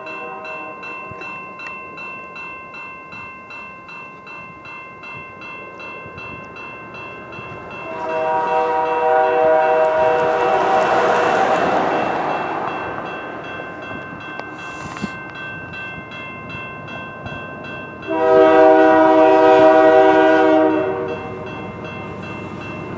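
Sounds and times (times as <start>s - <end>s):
locomotive horn chord: 0.0s - 1.1s, 7.8s - 11.6s, 18.1s - 21.5s
crossing bell ringing: 0.0s - 22.9s
train rumble: 0.0s - 22.9s.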